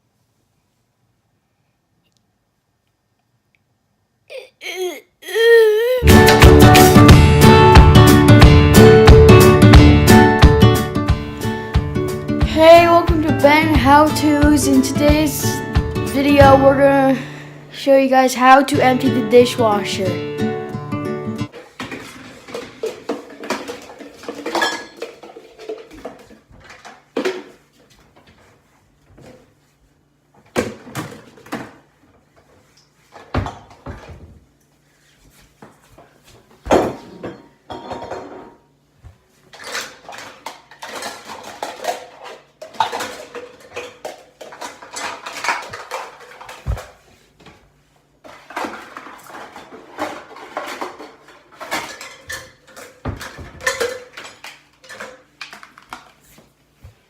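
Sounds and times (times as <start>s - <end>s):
dishes and cutlery clattering: 21.5s - 27.4s, 36.9s - 38.6s, 39.5s - 46.6s, 48.3s - 55.6s.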